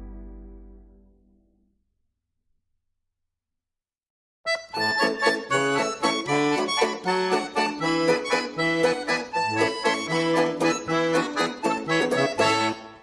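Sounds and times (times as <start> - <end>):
lively accordion music: 4.5 - 13.0.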